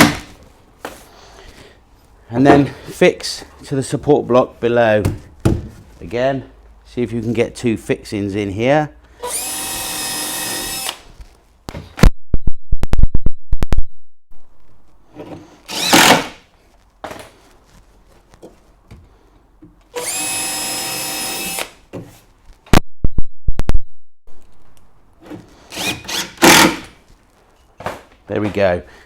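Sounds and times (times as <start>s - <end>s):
cordless drill motor whining: 9.2s - 11.0s, 20.0s - 21.7s, 25.7s - 26.6s.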